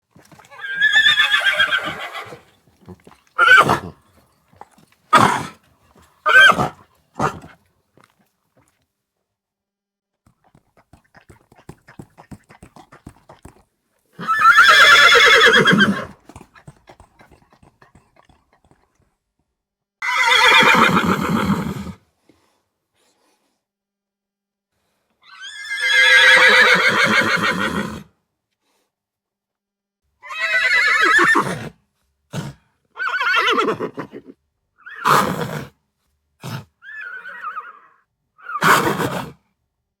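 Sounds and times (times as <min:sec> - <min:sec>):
horse neighing: 0:00.3 - 0:04.0, 0:05.1 - 0:05.6, 0:06.2 - 0:07.4, 0:14.2 - 0:16.2, 0:20.0 - 0:21.9, 0:25.3 - 0:28.0, 0:30.2 - 0:31.6, 0:33.0 - 0:34.3, 0:36.8 - 0:39.2.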